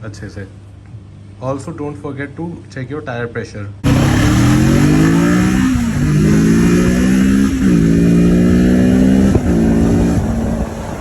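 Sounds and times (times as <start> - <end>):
motorcycle engine revving: 3.8 - 11.0.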